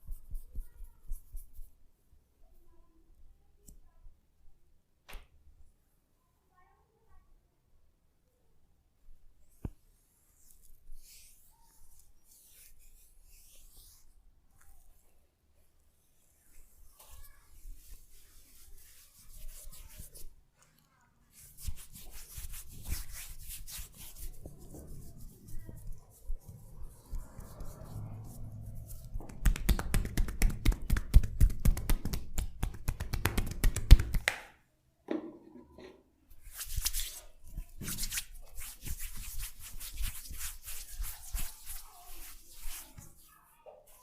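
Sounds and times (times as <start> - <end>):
hands rubbing oily skin: 9.5 - 14.9, 16.2 - 20.3, 21.3 - 34.5, 36.4 - 43.3
rapid rhythmic tapping: 29.1 - 34.4.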